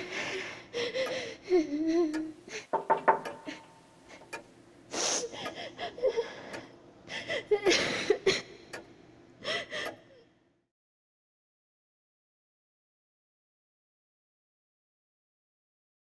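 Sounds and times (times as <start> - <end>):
woman sobbing: 0.0 - 2.7, 4.9 - 8.6.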